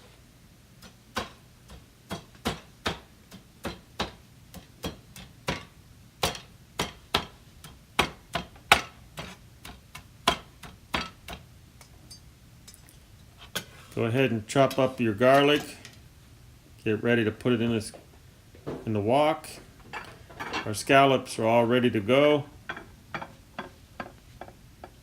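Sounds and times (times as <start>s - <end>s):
knife chopping on cutting board: 1.2s - 7.4s.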